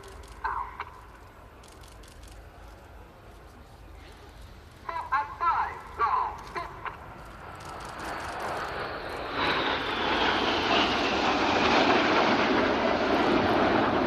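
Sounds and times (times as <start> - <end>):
jet engines roaring overhead: 2.4 - 14.0.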